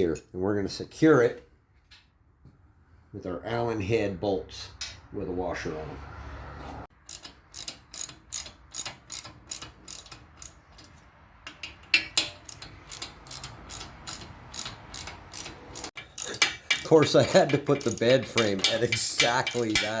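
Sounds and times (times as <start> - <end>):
hand ratchet clicking: 7.0 - 20.0.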